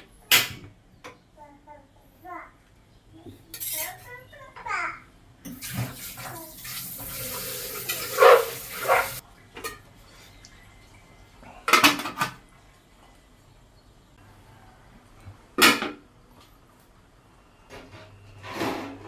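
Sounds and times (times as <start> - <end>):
pots and utensils clinking: 3.5 - 4.2, 5.5 - 9.9, 11.6 - 12.4
kitchenware clattering: 3.5 - 4.3, 5.5 - 9.8, 11.7 - 12.4
water running: 5.5 - 13.6.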